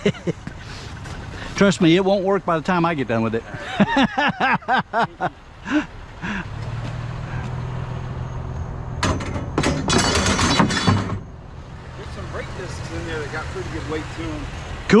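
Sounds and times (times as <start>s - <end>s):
vehicle engine idling: 0.0s - 9.6s, 11.2s - 15.0s
metal scrap clattering: 9.0s - 11.3s.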